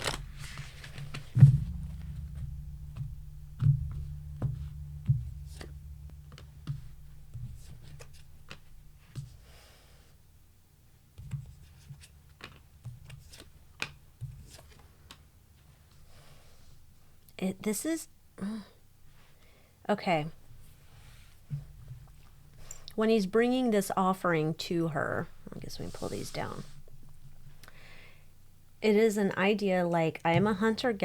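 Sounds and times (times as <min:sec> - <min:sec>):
cards being shuffled on a table: 0:00.0 - 0:01.4, 0:11.2 - 0:15.2.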